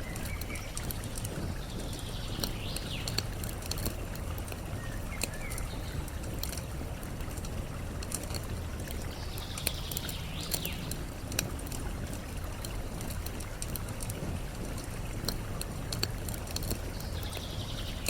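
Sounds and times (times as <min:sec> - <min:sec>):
campfire crackling and popping: 0:00.0 - 0:18.0
flowing water: 0:00.0 - 0:18.0.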